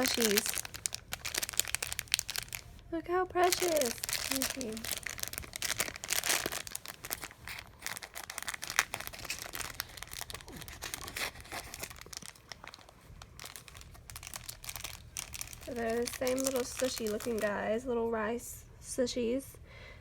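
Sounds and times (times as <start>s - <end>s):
plastic packaging crinkling and tearing: 0.0s - 17.7s.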